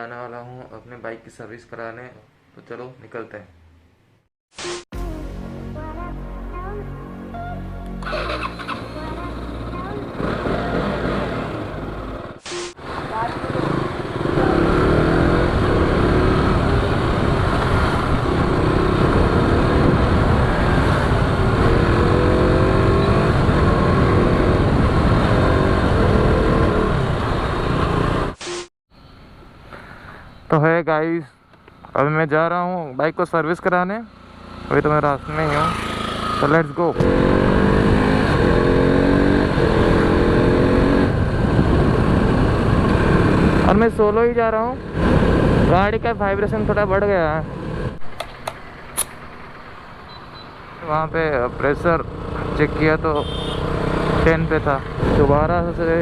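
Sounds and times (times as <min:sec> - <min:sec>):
motorcycle engine revving: 0:07.9 - 0:28.4, 0:33.4 - 0:56.0
wind and road rush: 0:08.0 - 0:28.4, 0:31.4 - 0:56.0
wind noise rumble: 0:37.0 - 0:48.2.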